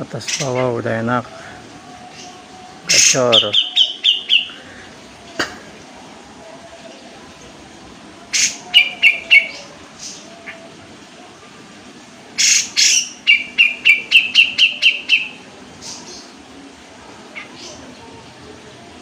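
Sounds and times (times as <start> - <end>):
bird singing harsh notes and chirps: 0.0 - 1.0, 1.9 - 4.9, 8.2 - 10.8, 12.4 - 16.4.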